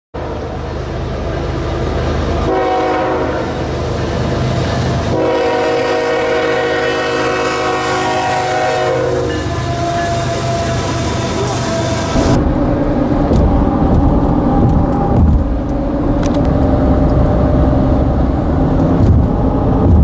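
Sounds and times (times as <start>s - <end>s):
bridge traffic rumble: 0.2s - 20.0s
droning pitched hum: 12.1s - 20.0s.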